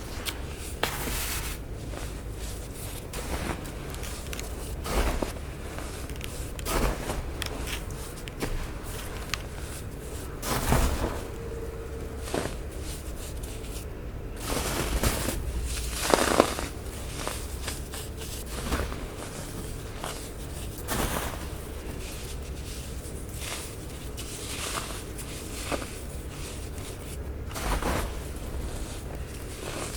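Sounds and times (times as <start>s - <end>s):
baking soda crunching: 14.4s - 29.9s.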